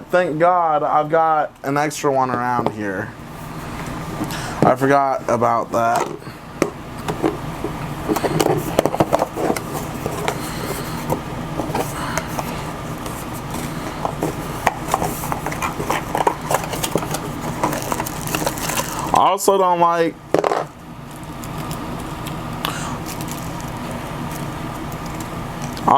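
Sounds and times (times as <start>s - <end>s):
steady low hum: 0.0s - 25.9s
packaging clicks taps and scrapes: 8.1s - 19.1s.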